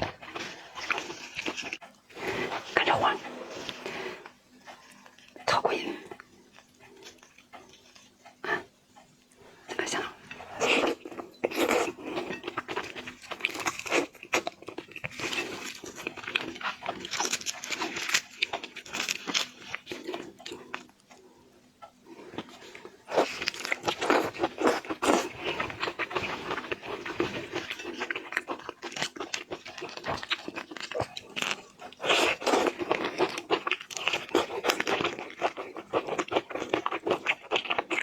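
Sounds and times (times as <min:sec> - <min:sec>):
person crunching and chewing food: 0:00.0 - 0:02.9, 0:10.2 - 0:21.3, 0:22.2 - 0:38.0.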